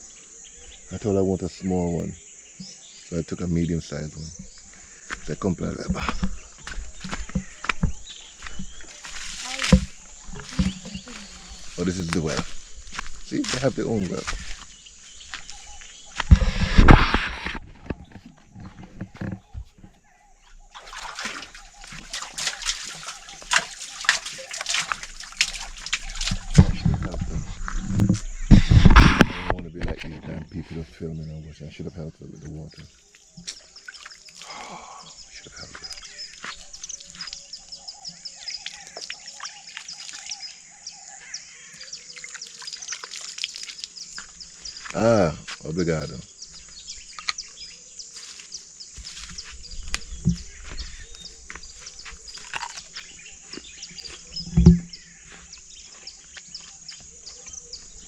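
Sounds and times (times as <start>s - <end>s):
small birds chirping: 0.0s - 58.0s
water splashing in bucket: 4.4s - 17.6s, 20.6s - 29.4s, 33.2s - 40.8s, 41.6s - 45.1s
knocks: 54.5s - 54.9s.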